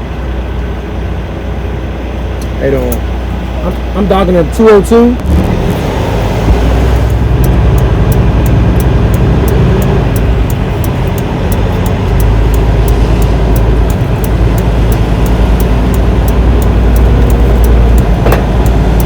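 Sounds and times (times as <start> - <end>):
diesel engine running: 0.0 - 19.0
fast sharp high clicks: 7.0 - 19.0.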